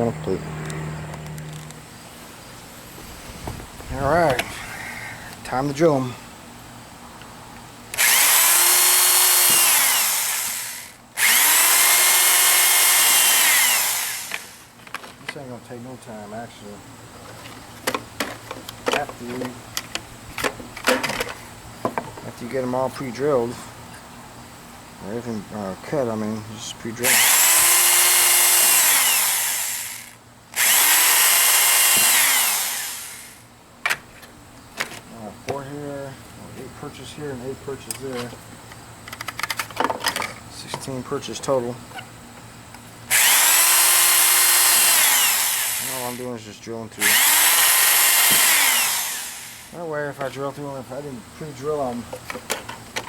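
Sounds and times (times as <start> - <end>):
power drill drilling: 8.0 - 14.7, 27.0 - 33.4, 43.1 - 46.2, 47.0 - 49.8.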